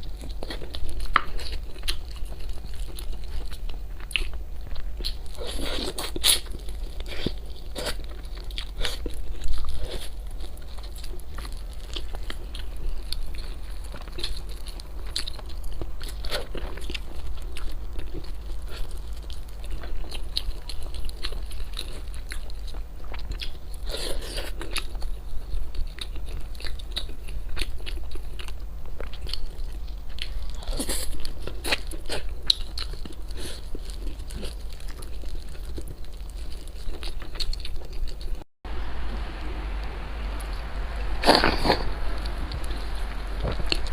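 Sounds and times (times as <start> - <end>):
chewing with crunches: 0.0 - 38.5, 40.4 - 43.9
low hum: 38.7 - 43.9.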